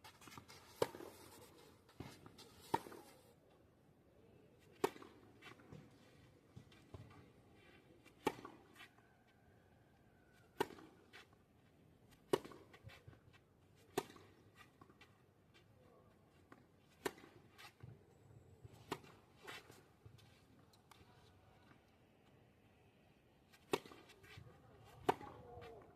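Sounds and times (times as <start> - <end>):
racket hitting tennis balls: 0.2 - 3.1, 4.7 - 6.0, 8.0 - 8.8, 10.6 - 11.3, 12.2 - 13.0, 13.8 - 15.0, 16.8 - 17.9, 18.7 - 19.9, 23.6 - 25.9.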